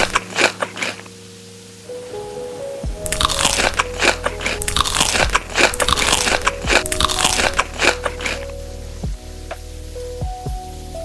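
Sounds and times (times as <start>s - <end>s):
crunchy chewing of food: 0.0s - 1.1s, 3.0s - 8.5s
background music with held notes: 0.0s - 11.0s.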